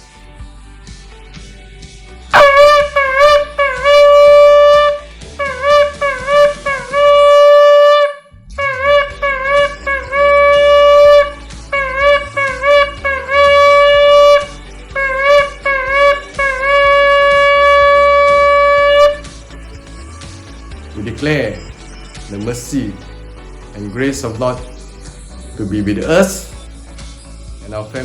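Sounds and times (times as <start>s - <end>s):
shofar blasts: 2.3s - 19.4s.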